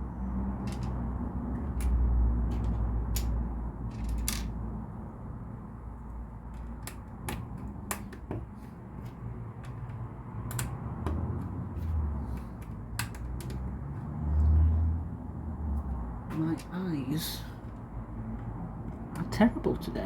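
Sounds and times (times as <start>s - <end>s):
plastic bricks clicking: 0.6s - 4.6s, 6.4s - 8.5s, 9.6s - 11.5s.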